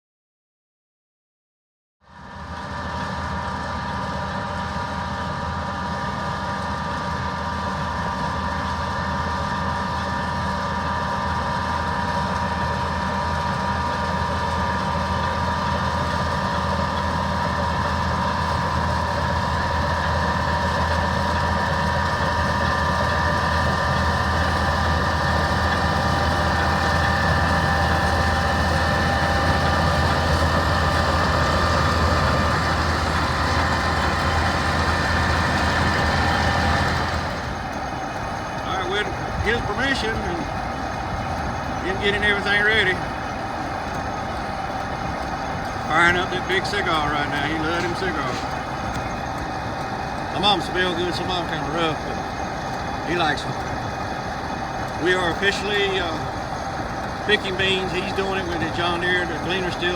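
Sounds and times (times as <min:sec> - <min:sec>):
heavy diesel engine running: 0:02.1 - 0:59.9
high whines: 0:17.7 - 0:59.9.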